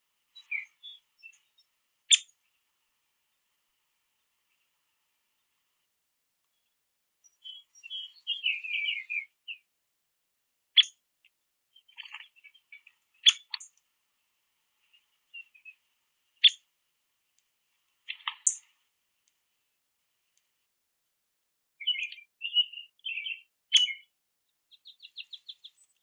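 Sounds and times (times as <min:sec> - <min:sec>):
woodpecker chattering chirps: 0:11.9 - 0:13.6.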